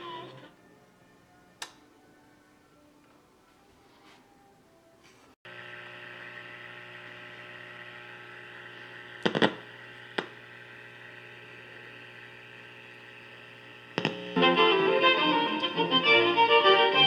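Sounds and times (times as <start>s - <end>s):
radio hum and hiss: 5.5s - 14.4s
sharp crackling clicks: 13.9s - 14.3s.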